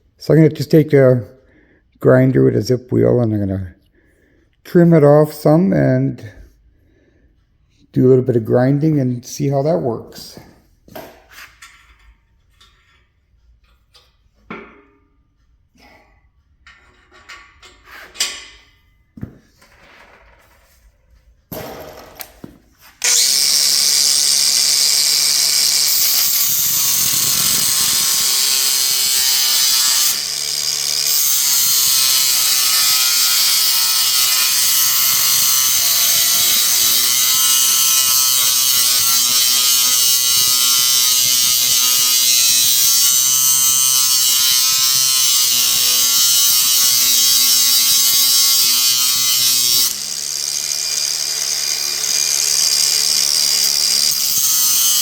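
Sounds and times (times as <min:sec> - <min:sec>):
angle grinder cutting metal: 0:21.6 - 0:55.0.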